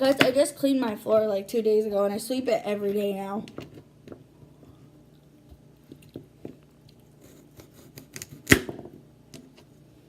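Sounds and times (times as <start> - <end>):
knife cutting carrots: 7.2 - 8.7.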